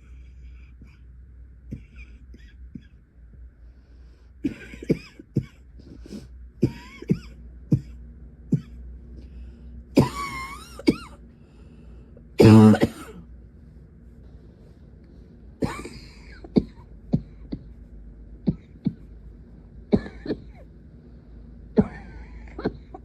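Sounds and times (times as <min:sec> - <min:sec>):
woman coughing: 0:04.4 - 0:05.6, 0:06.6 - 0:08.7, 0:10.0 - 0:11.2, 0:12.4 - 0:13.2, 0:15.6 - 0:17.7, 0:19.9 - 0:20.6, 0:21.8 - 0:23.0.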